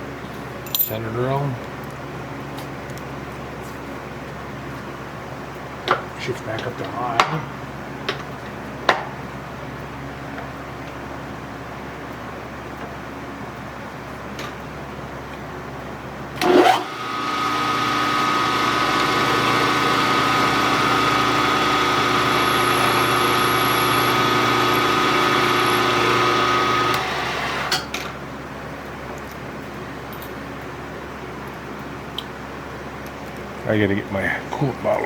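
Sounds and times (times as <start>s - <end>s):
milling machine motor hum: 16.4s - 27.8s.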